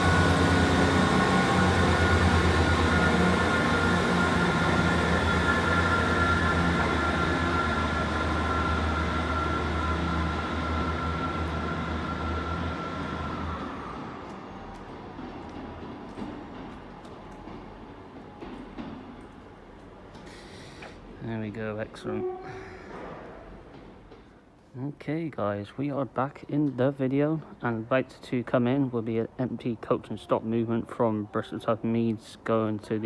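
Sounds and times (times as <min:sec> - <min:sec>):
diesel train engines droning: 0:00.0 - 0:24.6.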